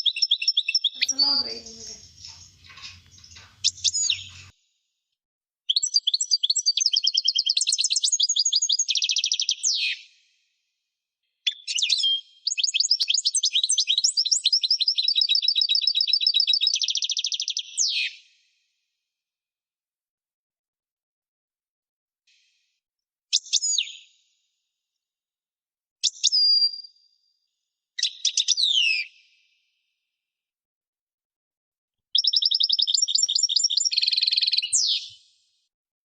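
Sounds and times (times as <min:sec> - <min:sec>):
songbird singing: 0:00.9 - 0:04.5.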